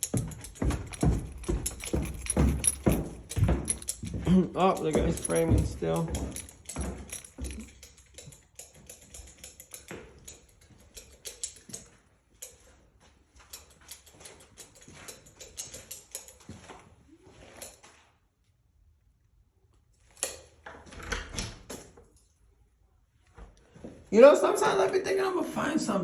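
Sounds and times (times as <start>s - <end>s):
light irregular taps and knocks: 0.0s - 16.8s.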